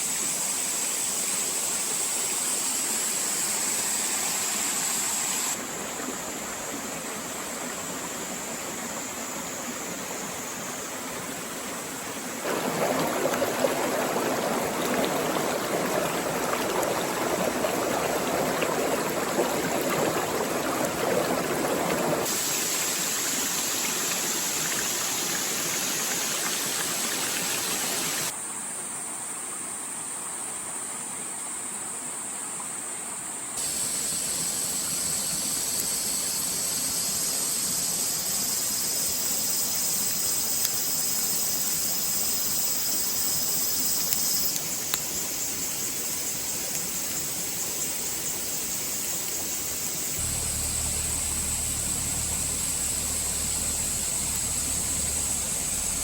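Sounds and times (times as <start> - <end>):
flowing water rushing: 0.6 - 28.3, 39.0 - 56.0.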